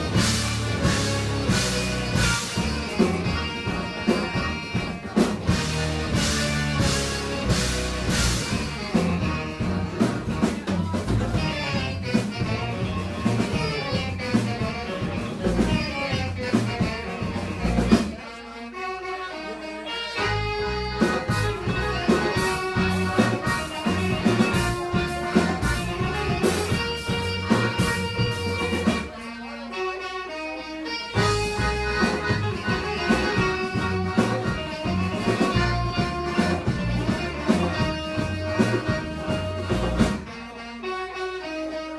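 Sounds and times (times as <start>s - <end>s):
live band music: 0.0s - 41.9s.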